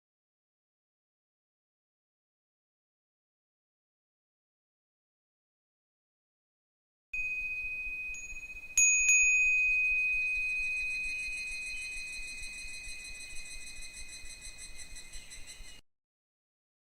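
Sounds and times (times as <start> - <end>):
wind bell ringing: 7.2 - 15.6.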